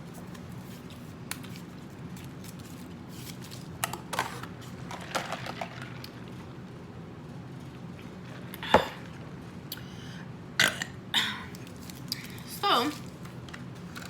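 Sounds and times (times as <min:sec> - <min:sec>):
food packaging clicks and crinkles: 0:00.0 - 0:06.5, 0:11.5 - 0:14.0.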